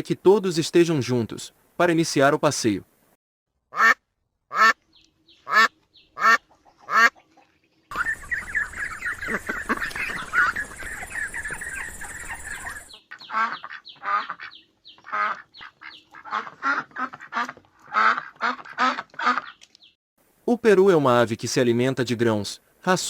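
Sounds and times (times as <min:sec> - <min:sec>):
ducks quacking: 0:03.7 - 0:04.8, 0:05.4 - 0:19.6.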